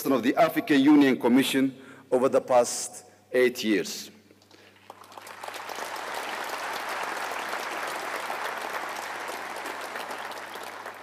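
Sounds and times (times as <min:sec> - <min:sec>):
audience applauding: 0:04.8 - 0:11.0.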